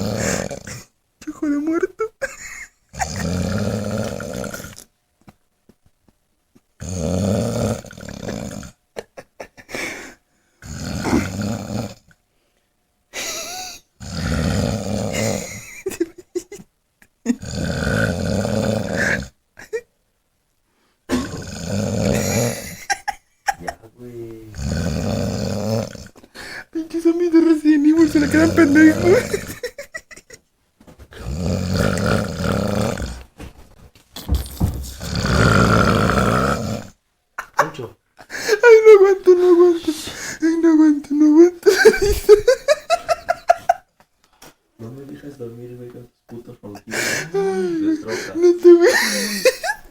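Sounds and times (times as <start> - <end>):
person snoring heavily: 0.0 - 0.9, 2.9 - 4.8, 6.8 - 8.8, 9.7 - 12.1, 13.2 - 15.9, 17.3 - 19.4, 21.1 - 23.1, 24.4 - 26.7, 27.9 - 29.8, 31.1 - 33.4, 34.2 - 37.0
quiet breaths: 9.6 - 11.3, 11.9 - 12.9, 20.6 - 21.4, 23.7 - 26.8, 39.8 - 40.6, 44.2 - 49.9.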